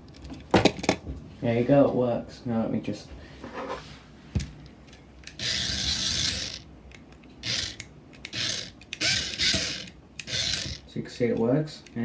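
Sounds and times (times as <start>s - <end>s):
toy motors and gears whirring: 5.2s - 6.6s, 7.4s - 10.8s.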